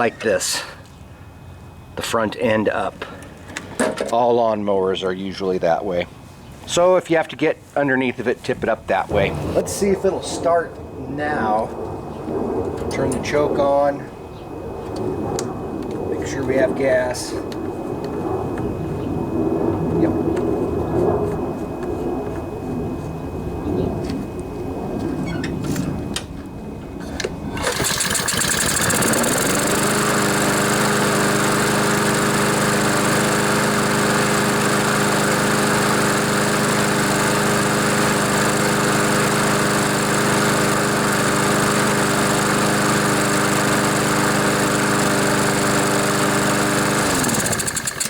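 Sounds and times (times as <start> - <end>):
lawnmower engine starting and running: 27.5 - 48.0.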